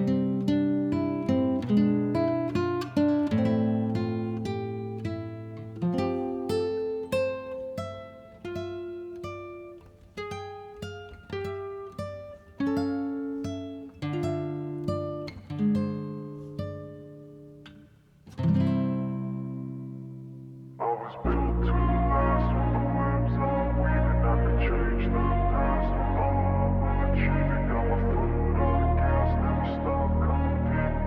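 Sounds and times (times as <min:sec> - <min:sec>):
acoustic guitar picking: 0:00.0 - 0:23.3.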